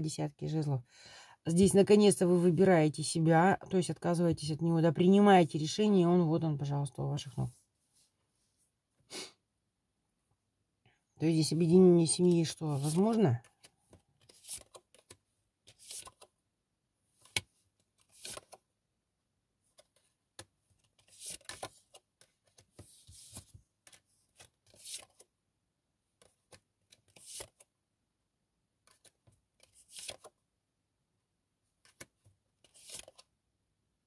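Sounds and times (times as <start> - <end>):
cards being shuffled: 12.8 - 16.3, 17.2 - 18.6, 19.7 - 25.3, 26.2 - 27.7, 28.9 - 30.4, 31.8 - 33.3.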